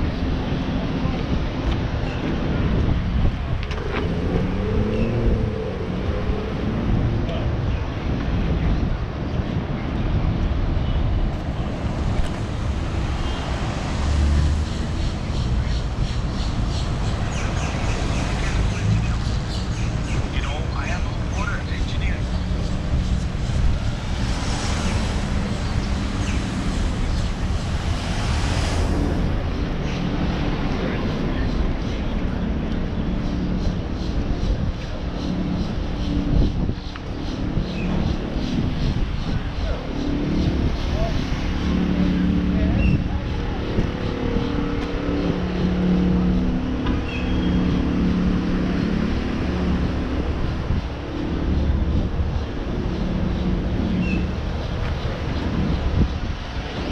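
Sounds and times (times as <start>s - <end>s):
traffic rumble: 0.0s - 56.9s
wind on microphone: 0.0s - 56.9s.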